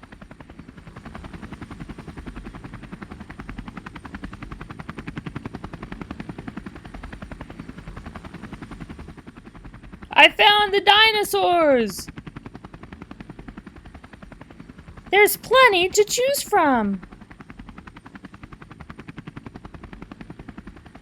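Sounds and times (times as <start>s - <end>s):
helicopter rotor chopping: 10.1s - 12.2s, 15.2s - 17.1s.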